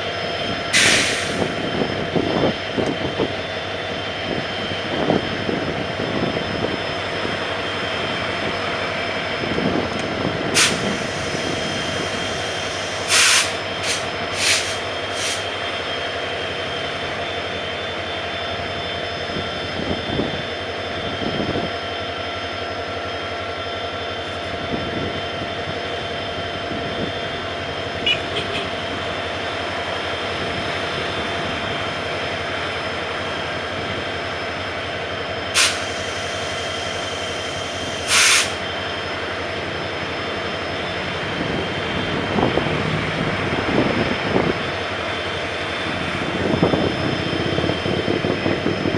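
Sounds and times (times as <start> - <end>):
locomotive engine humming: 0.0 - 48.9
short air hisses: 0.8 - 1.4, 10.6 - 11.5, 12.8 - 15.5, 35.6 - 36.2, 38.0 - 38.6.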